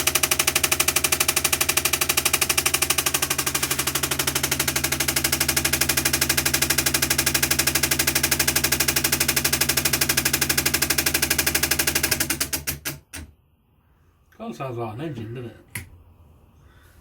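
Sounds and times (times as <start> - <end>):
fan heater mechanical chatter: 0.0 - 13.3.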